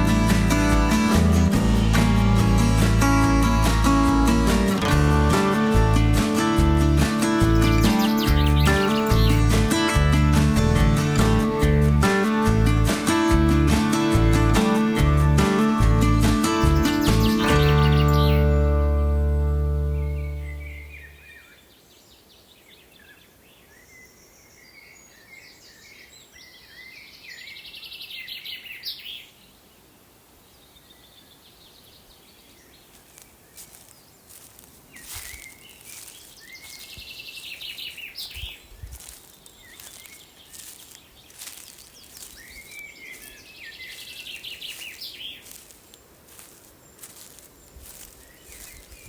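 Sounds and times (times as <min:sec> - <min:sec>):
songbird singing trilled phrase: 0:07.6 - 0:09.4, 0:16.8 - 0:18.6, 0:19.8 - 0:21.6.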